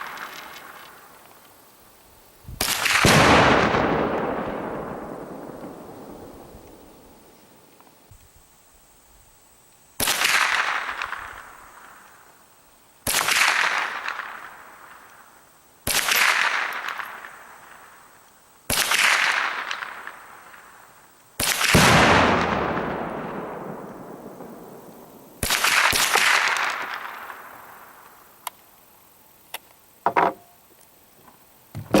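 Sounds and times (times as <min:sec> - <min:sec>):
rifle shots echoing: 0:02.6 - 0:07.3, 0:13.0 - 0:14.7, 0:21.4 - 0:27.9.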